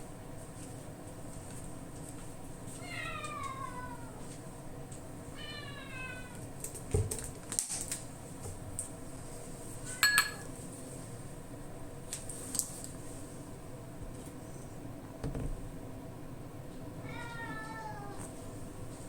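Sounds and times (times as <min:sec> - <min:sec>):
cat meowing: 0:02.8 - 0:04.2, 0:05.4 - 0:06.4, 0:17.0 - 0:18.3
dishes and utensils clinking: 0:10.0 - 0:10.5.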